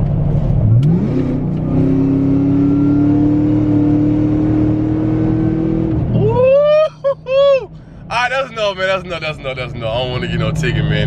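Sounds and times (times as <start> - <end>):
car engine accelerating hard: 0.0 - 6.4.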